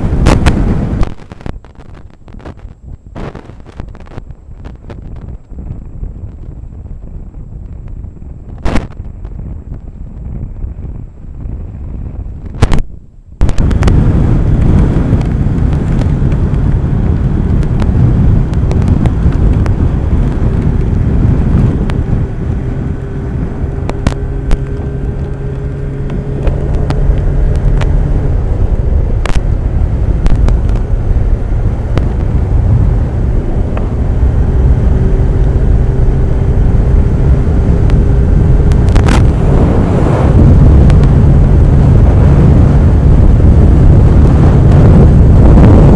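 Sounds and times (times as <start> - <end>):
motorcycle engine hum: 0.0 - 45.9
wind noise on microphone: 0.0 - 45.9.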